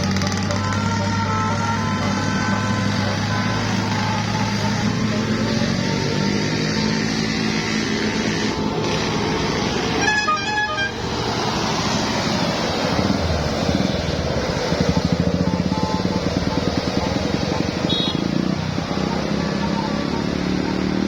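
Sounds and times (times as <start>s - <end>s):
traffic engine noise: 0.0s - 21.0s
multi-tone bus horn: 9.8s - 11.2s, 15.2s - 18.6s.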